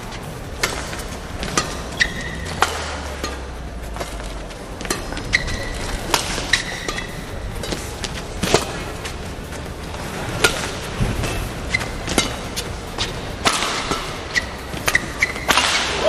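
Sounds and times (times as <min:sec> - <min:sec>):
rackets striking shuttlecock: 0:00.0 - 0:16.0
shoes squeaking on court: 0:00.0 - 0:16.0.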